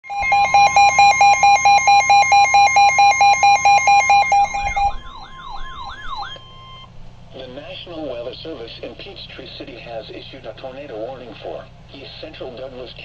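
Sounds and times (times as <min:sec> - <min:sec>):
rapid beeping: 0:00.0 - 0:06.9
warbling siren-like sweep: 0:00.0 - 0:06.9
high warning tone: 0:00.0 - 0:07.0.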